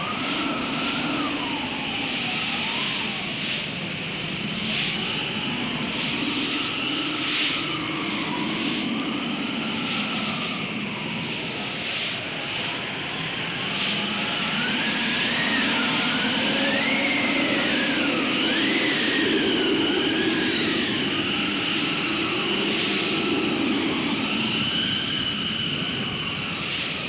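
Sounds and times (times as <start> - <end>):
faint whistling tone: 13.6 - 27.0.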